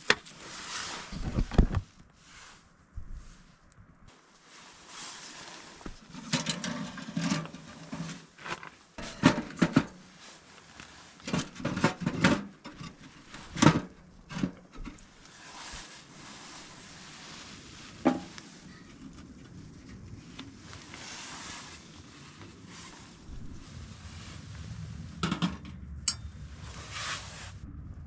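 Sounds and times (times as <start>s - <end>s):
firewood knocking and clattering: 18.0s - 18.5s.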